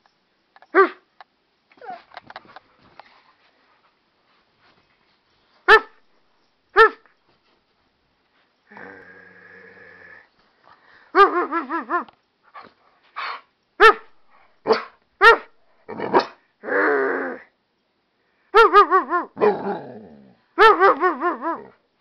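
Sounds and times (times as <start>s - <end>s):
dog barking: 5.7s - 6.0s, 6.8s - 7.1s, 13.2s - 16.4s, 18.6s - 19.6s, 20.6s - 21.7s.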